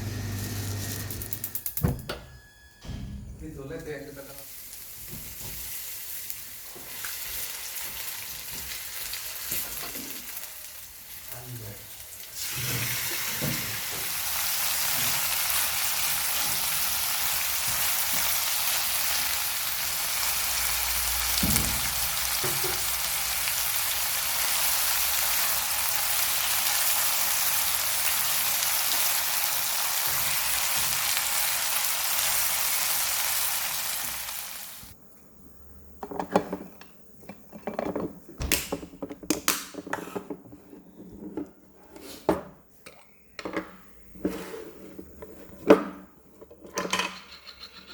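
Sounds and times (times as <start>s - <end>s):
food sizzling in a pan: 4.3s - 35.0s
kitchen utensils clinking: 46.6s - 47.9s.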